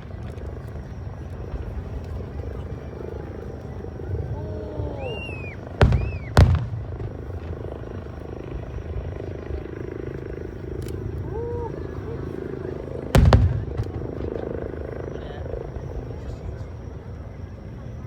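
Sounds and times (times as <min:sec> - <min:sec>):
crowd murmur: 0:00.0 - 0:18.0
sharp firework bangs: 0:05.8 - 0:07.3, 0:13.2 - 0:14.0.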